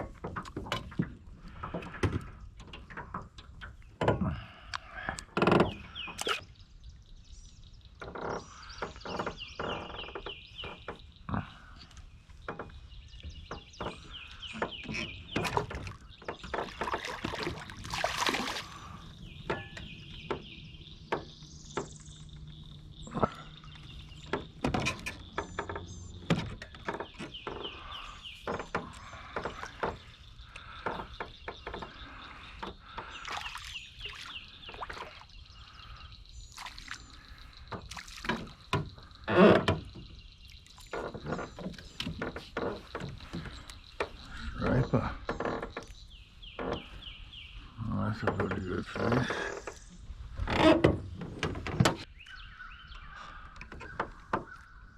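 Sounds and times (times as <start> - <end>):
knocks and clicks of gear: 0.0 - 6.5, 12.0 - 17.4, 19.3 - 33.1, 40.8 - 46.0, 48.2 - 52.4
birds chirping: 0.0 - 54.9.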